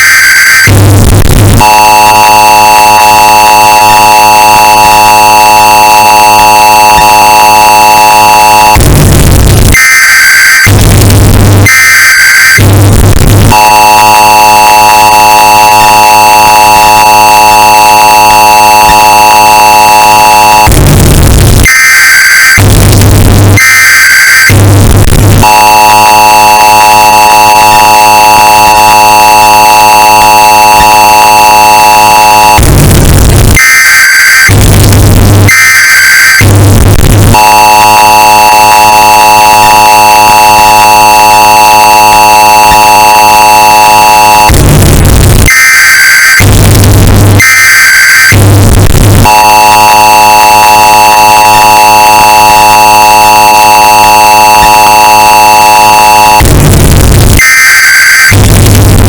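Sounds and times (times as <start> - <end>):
distorted two-tone alert alarm: 0.0 - 58.9
screeching digital data bursts: 1.6 - 9.0, 13.4 - 20.8, 21.6 - 32.6, 33.5 - 44.6, 49.2 - 56.5.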